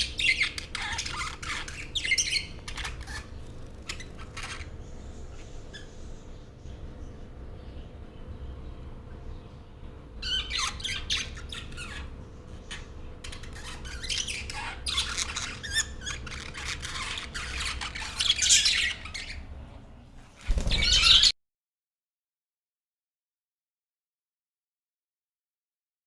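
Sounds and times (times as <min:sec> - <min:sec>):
budgies chirping and squawking: 0:00.0 - 0:06.3, 0:10.2 - 0:19.5, 0:20.4 - 0:21.3.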